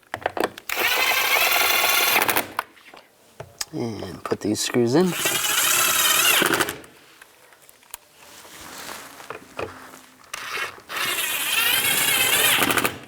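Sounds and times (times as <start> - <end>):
cordless power driver whirring: 0.7 - 2.6, 5.1 - 6.9, 10.3 - 13.0.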